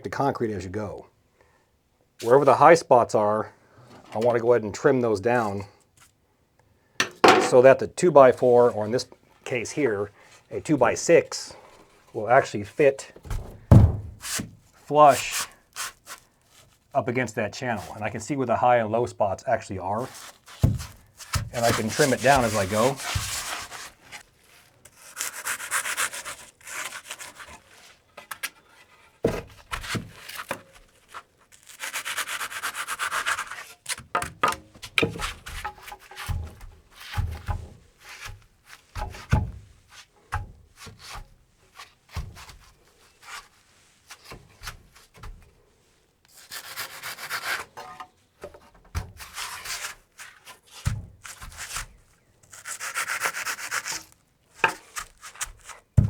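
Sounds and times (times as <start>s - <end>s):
hand rasp scraping wood: 20.1s - 24.2s, 24.9s - 29.2s, 29.8s - 34.0s, 46.4s - 47.8s, 49.2s - 55.8s.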